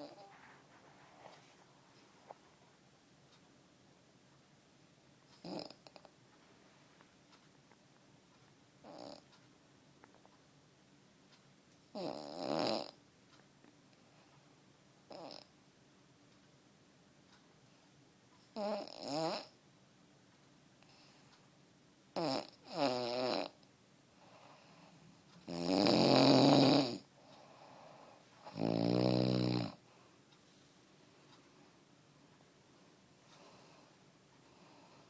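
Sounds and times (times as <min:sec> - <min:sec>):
man snoring: 0:12.0 - 0:13.0, 0:18.6 - 0:19.5, 0:22.2 - 0:23.6, 0:25.5 - 0:27.0, 0:28.4 - 0:29.8.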